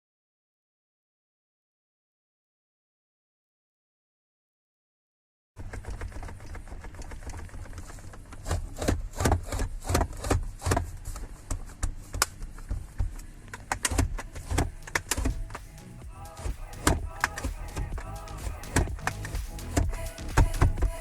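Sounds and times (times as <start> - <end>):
low rumble: 14.3 - 21.0.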